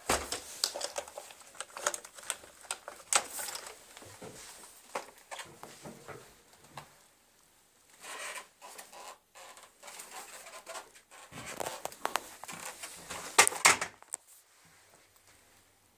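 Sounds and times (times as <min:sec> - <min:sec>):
plastic parts clicking and rattling: 0:00.0 - 0:06.2, 0:08.0 - 0:14.2.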